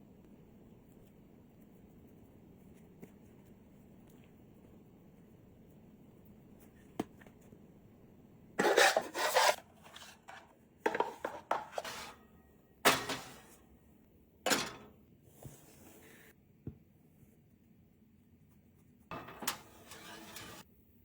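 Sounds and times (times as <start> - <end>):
dishes scraping and clattering: 8.6 - 12.3, 12.9 - 13.6, 14.5 - 16.0, 19.1 - 20.6.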